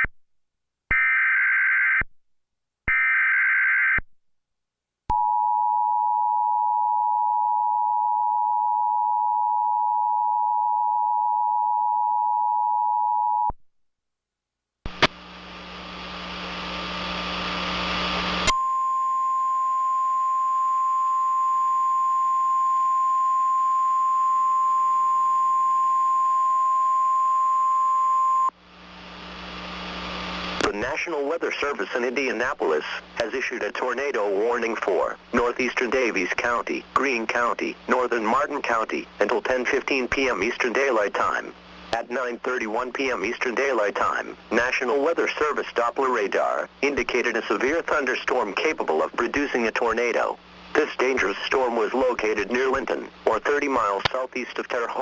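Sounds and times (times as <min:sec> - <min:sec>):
radio static with low hum: 0:14.9 - 0:20.6, 0:21.4 - 0:55.0
steady warning tone: 0:18.4 - 0:28.6.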